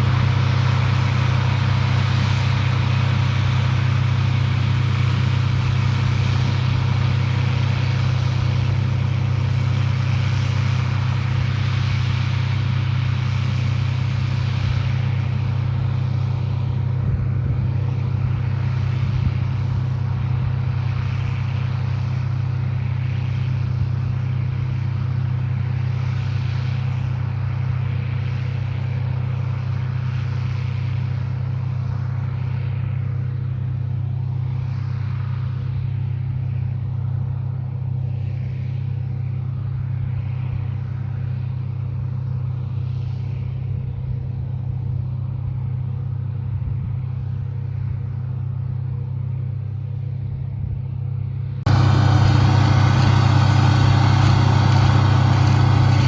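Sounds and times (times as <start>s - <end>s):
farm machine engine droning: 0.0s - 29.4s, 51.7s - 56.0s.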